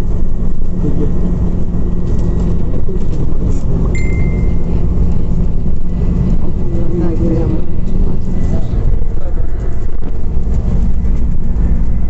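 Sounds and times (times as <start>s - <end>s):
bus engine droning: 0.0s - 12.0s
short high beep: 4.0s - 4.7s.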